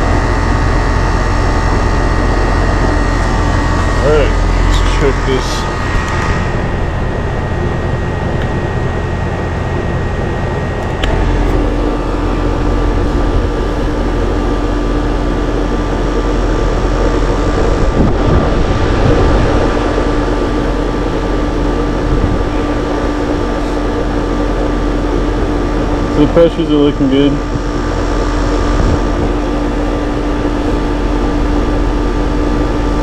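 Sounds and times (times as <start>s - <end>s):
air conditioner humming: 0.0s - 33.0s
low hum: 0.0s - 33.0s
air conditioner click: 8.3s - 8.7s, 10.7s - 11.8s.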